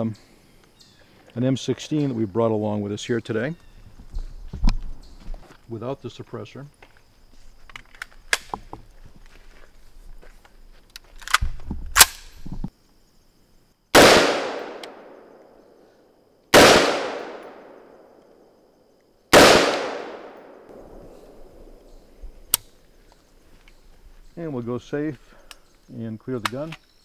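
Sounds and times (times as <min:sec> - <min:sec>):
rifle handling clicks: 0:07.6 - 0:08.6, 0:10.9 - 0:12.4, 0:14.5 - 0:15.0, 0:21.8 - 0:23.8, 0:26.4 - 0:27.0
rifle shots with echo: 0:14.0 - 0:15.4, 0:16.5 - 0:18.1, 0:19.3 - 0:21.8.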